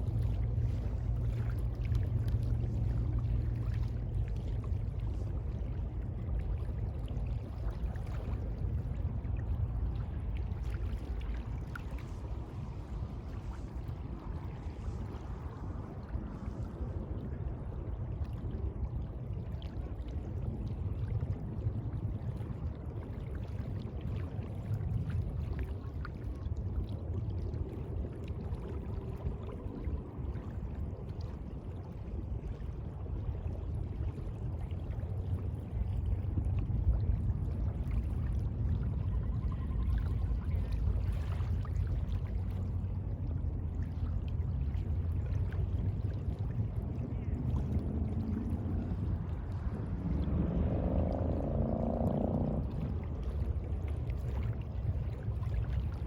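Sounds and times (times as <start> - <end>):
sea water lapping: 27.7 - 56.0.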